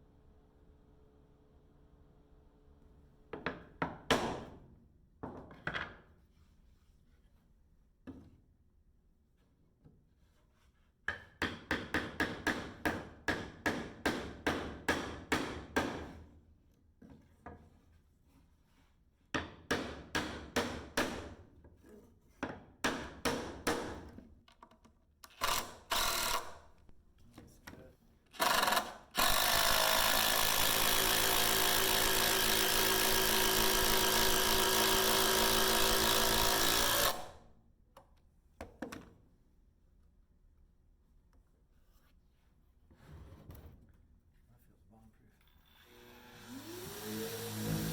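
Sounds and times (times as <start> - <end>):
handheld power tool running: 25.3 - 26.6, 28.4 - 37.4, 45.7 - 47.9.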